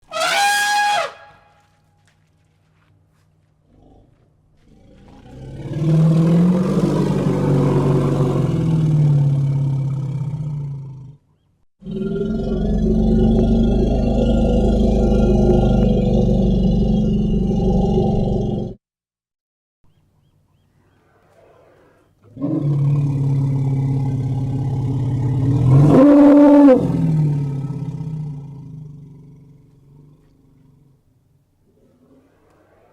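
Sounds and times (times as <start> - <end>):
elephant rumbling call: 0.0 - 1.6, 5.1 - 10.4, 31.6 - 32.9
elephant trumpet call: 0.0 - 1.8
elephant low rumbling roar: 3.7 - 18.8, 20.8 - 32.9.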